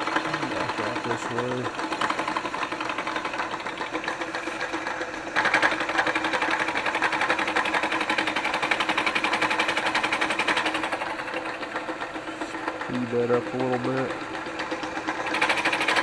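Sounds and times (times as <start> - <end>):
milling cutter chatter: 0.0 - 7.5, 8.4 - 16.0
milling machine motor hum: 0.0 - 16.0.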